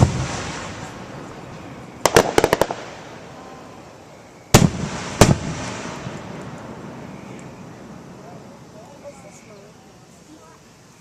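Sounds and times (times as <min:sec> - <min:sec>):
fireworks loud booms: 0:00.0 - 0:08.8
fireworks sharp bangs: 0:00.0 - 0:08.8.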